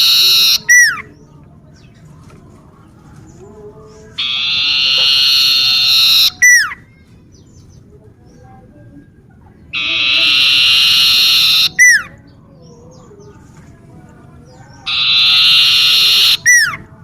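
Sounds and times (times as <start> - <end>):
bird singing trilled phrases: 0.0 - 2.0, 4.2 - 8.4, 9.8 - 13.3, 14.5 - 16.8.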